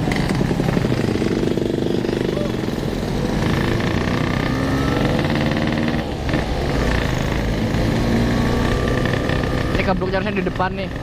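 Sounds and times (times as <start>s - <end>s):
two-stroke motorcycle engines: 0.0s - 11.0s.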